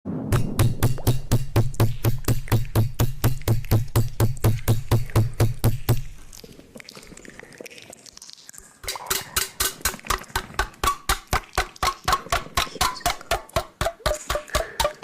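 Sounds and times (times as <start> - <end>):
fingers tapping on microphone: 8.9 - 15.0.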